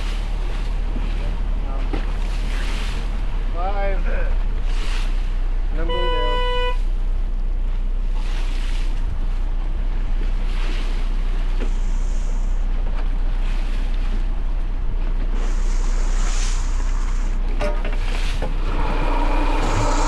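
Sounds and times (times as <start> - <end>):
boat motor drone: 0.0 - 20.0
hissing water: 11.7 - 12.8, 15.4 - 20.0
wind on microphone: 14.0 - 20.0.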